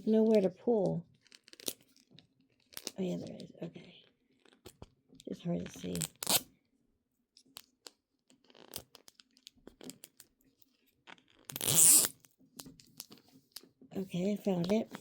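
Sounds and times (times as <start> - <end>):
plastic wrapping crinkling: 1.2 - 3.3
plastic wrapping ripping: 5.9 - 6.4.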